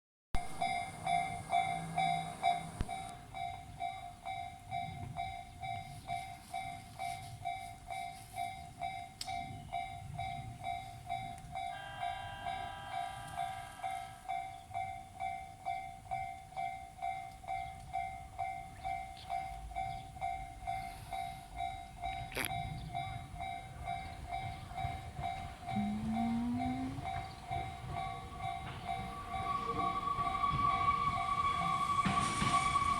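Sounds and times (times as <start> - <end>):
level crossing warning bell ringing: 0.4 - 32.2
low rising whine: 25.6 - 27.6
higher electronic tone: 25.7 - 27.3.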